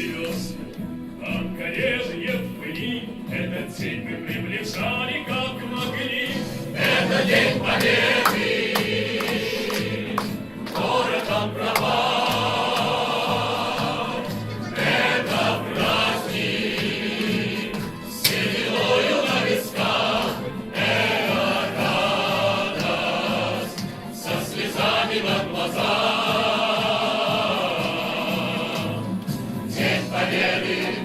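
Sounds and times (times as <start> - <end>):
musical accompaniment: 0.0 - 31.0
choir singing: 6.2 - 31.0.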